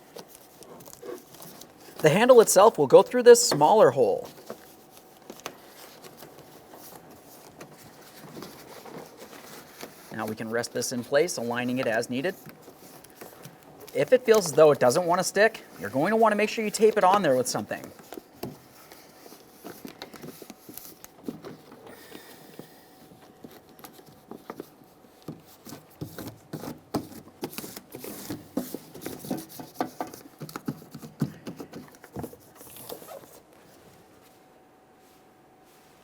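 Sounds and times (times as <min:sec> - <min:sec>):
plastic sheet crinkling: 0:00.0 - 0:34.0.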